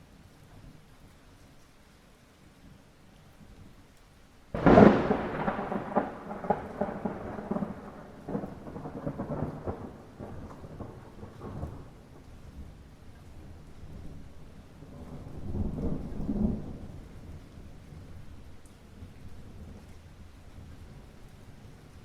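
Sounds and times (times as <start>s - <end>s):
light rain: 0.0s - 22.0s
thunder clap and rumble: 4.6s - 12.2s, 14.8s - 17.4s.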